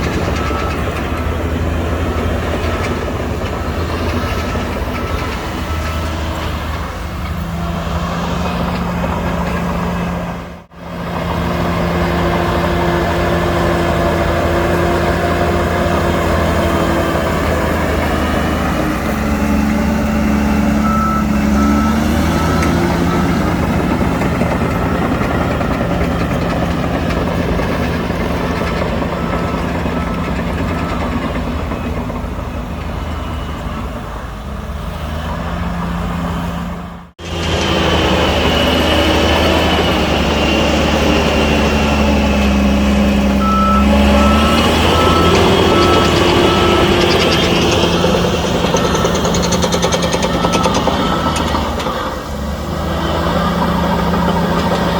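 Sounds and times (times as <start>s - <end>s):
reversing alarm beeping: 0.0s - 10.4s, 12.4s - 34.3s, 37.4s - 52.1s
heavy diesel machinery running: 0.0s - 54.9s.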